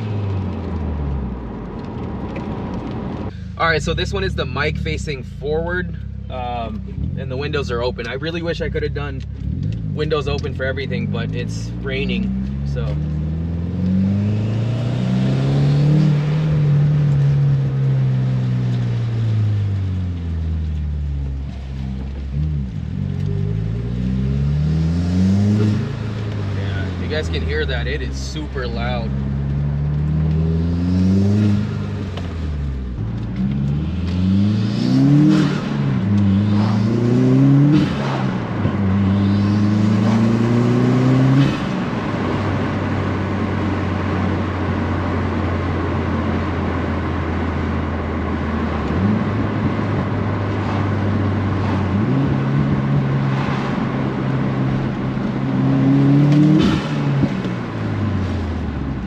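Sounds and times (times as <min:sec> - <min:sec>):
car engine accelerating: 0:00.0 - 0:59.0
loud turbo intake: 0:33.6 - 0:44.8, 0:48.8 - 0:58.6.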